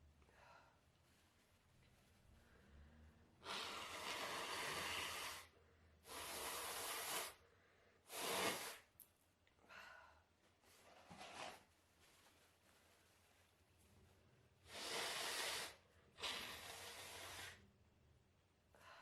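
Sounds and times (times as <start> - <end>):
person blowing congested nose: 3.4 - 7.4, 8.0 - 8.9, 14.6 - 17.6.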